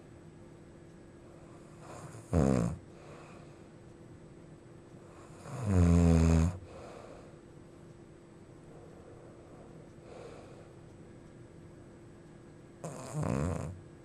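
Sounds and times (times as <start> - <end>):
person snoring: 1.9 - 2.8, 5.3 - 6.6, 12.8 - 13.8.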